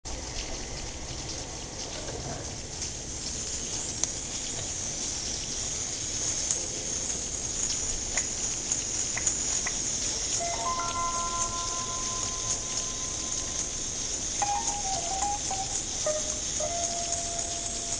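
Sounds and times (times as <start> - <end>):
steady rain: 0.1 - 17.9
water drips: 2.7 - 17.9
bell-like tones: 10.4 - 17.9.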